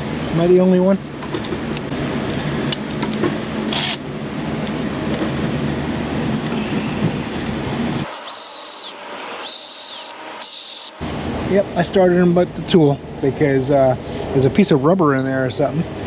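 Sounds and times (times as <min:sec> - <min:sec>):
electric ratchet running: 0:08.0 - 0:11.0
short bursts of hiss: 0:08.0 - 0:11.0.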